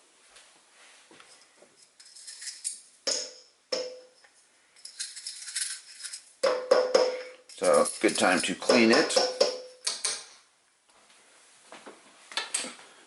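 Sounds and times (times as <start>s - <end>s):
metal parts rattling and knocking: 1.9s - 3.4s, 4.8s - 10.4s.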